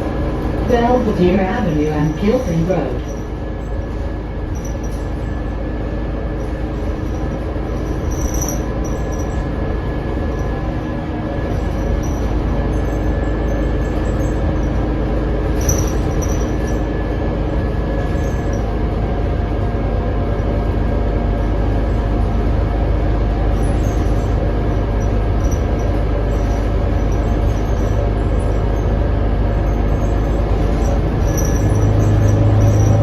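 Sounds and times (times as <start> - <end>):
bus engine rumble: 0.0 - 33.0
held whining tones: 22.7 - 33.0
brief high squeaks: 29.9 - 33.0.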